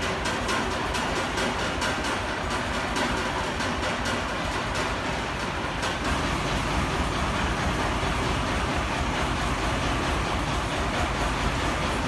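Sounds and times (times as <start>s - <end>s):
heavy vehicle engine running: 5.5s - 12.0s.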